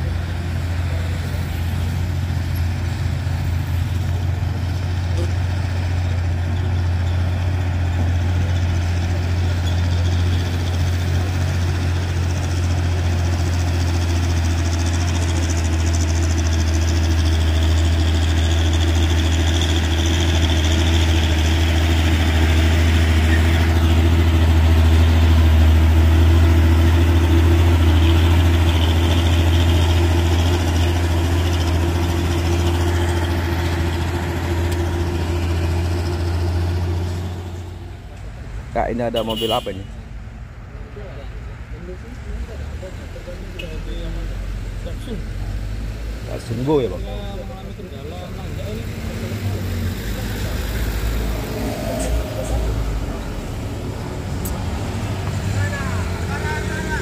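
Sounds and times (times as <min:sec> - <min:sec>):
road noise: 0:00.0 - 0:57.0
truck engine humming: 0:00.0 - 0:57.0.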